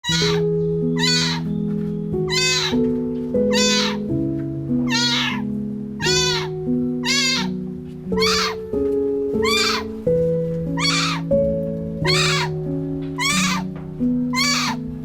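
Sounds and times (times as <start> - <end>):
kitten meowing: 0.0 - 1.5, 2.3 - 2.8, 3.5 - 4.1, 4.8 - 5.4, 6.0 - 8.7, 9.4 - 10.0, 10.8 - 11.3, 12.0 - 12.6, 13.2 - 13.7, 14.3 - 14.8
background music: 0.0 - 15.0.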